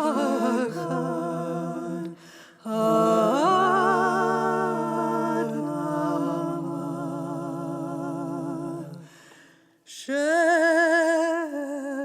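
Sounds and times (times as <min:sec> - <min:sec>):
voices singing long notes: 0:00.0 - 0:09.1.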